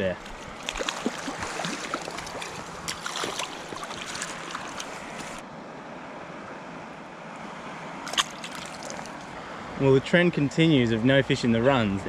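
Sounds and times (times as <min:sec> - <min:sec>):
creek water running over rocks: 0:00.0 - 0:05.4, 0:08.0 - 0:09.4
small water splashes: 0:00.3 - 0:05.4, 0:08.0 - 0:09.3.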